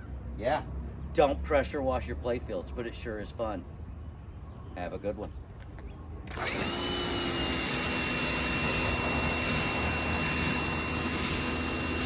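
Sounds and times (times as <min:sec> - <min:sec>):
pressure washer whine: 0:06.3 - 0:12.0.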